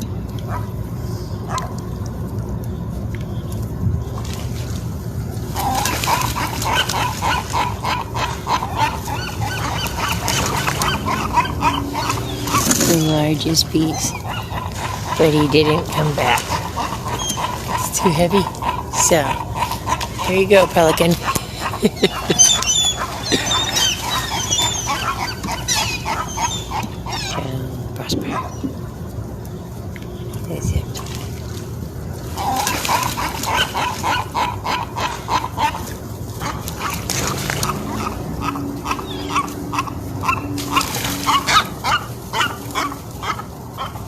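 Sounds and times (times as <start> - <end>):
seabirds calling: 0.0 - 44.0
animal yelping: 5.6 - 27.6, 32.4 - 44.0.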